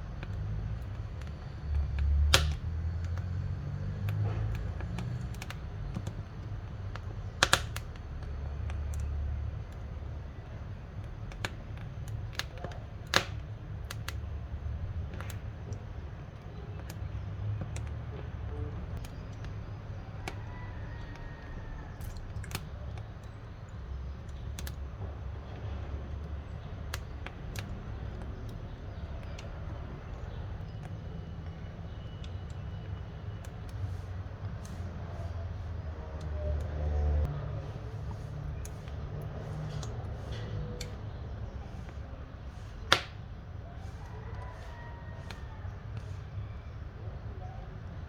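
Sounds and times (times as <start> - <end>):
wood fire crackling: 0.0 - 48.0
sharp pops of fire: 0.2 - 15.8, 42.6 - 43.3.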